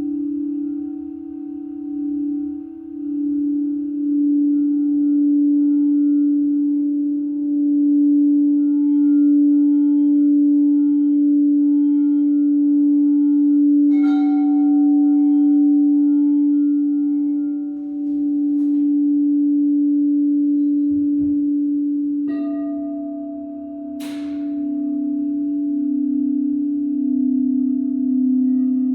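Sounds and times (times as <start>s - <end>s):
singing bowls humming: 0.0s - 28.9s
singing bowl struck: 12.0s - 28.9s.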